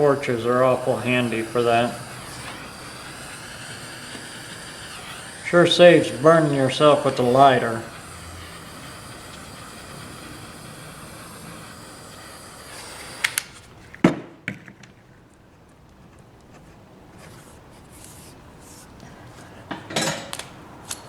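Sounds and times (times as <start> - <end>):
butane torch hissing: 0.0 - 14.1, 17.0 - 21.0
sharp clicks: 12.1 - 14.0.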